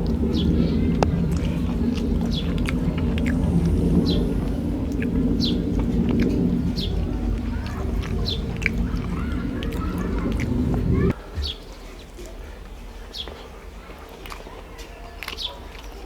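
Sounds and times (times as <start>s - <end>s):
low rumble: 0.0s - 11.5s.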